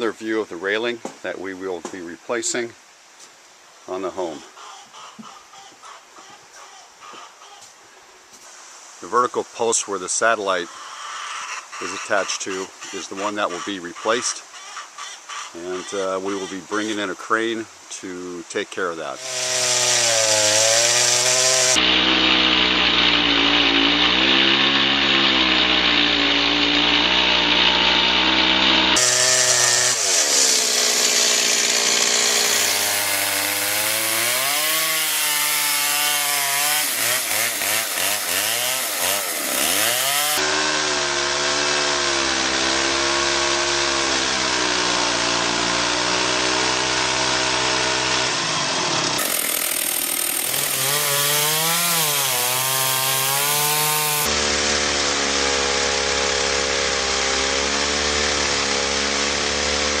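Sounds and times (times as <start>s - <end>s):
chainsaw cutting wood: 19.2s - 60.0s.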